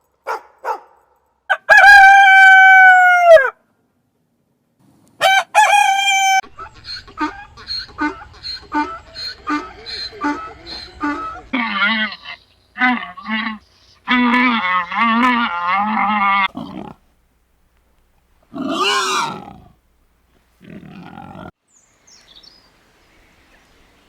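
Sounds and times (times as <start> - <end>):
farm animals calling: 5.2 - 17.1, 18.5 - 19.8, 20.6 - 21.5.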